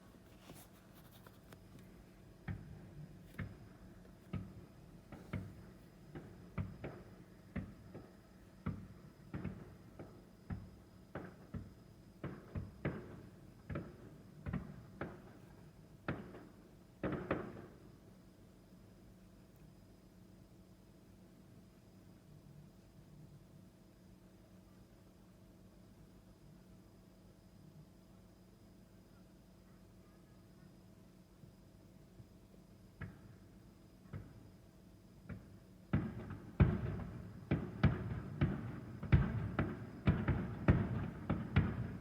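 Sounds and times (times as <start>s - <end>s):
distant fireworks booming: 2.2s - 18.0s, 32.9s - 42.0s
fireworks crackle: 35.9s - 42.0s.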